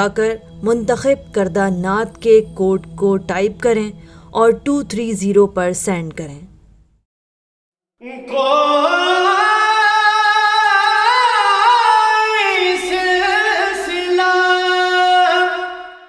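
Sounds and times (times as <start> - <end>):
person singing unaccompanied: 8.0 - 16.0.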